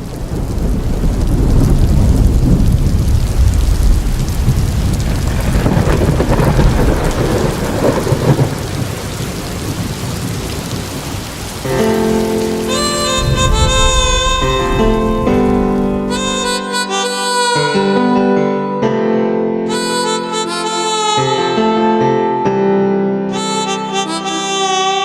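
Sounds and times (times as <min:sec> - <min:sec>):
rolling thunder: 0:00.0 - 0:16.5
steady rain: 0:00.0 - 0:16.9.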